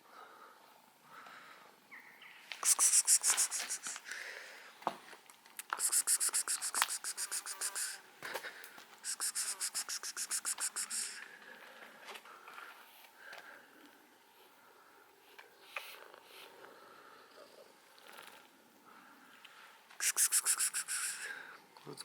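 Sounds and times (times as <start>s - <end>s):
cat rapid rhythmic rasping: 5.7s - 8.0s, 9.1s - 11.2s.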